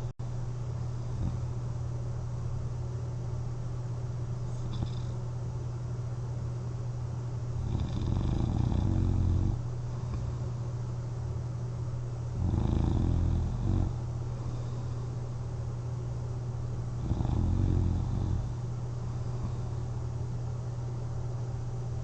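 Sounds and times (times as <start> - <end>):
steady low hum: 0.0 - 22.0
person snoring: 7.6 - 10.4, 12.4 - 14.8, 17.0 - 18.6.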